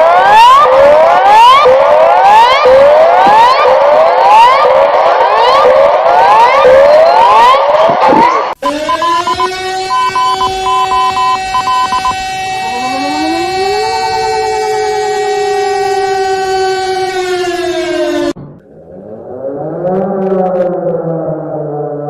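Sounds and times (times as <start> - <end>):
second siren tone gliding up: 0.0 - 22.0
warning siren tone: 0.0 - 22.0
rapid beeping: 8.6 - 13.1.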